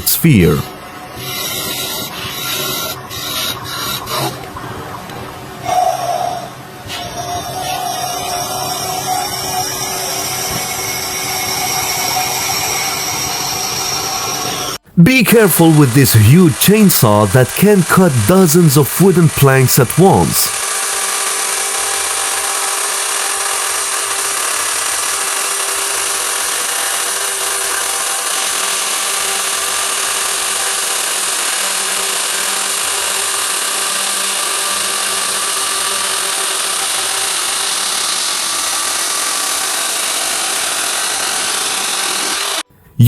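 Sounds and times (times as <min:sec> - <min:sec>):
chainsaw cutting wood: 0:20.6 - 0:42.6.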